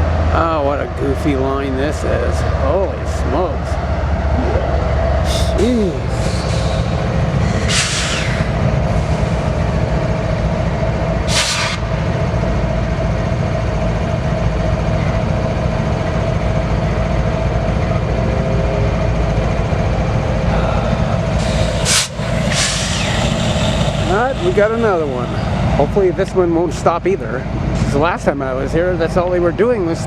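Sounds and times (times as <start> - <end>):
train wheels rumbling on rail: 0.0 - 30.0
short high hisses: 6.1 - 8.4, 11.3 - 11.8.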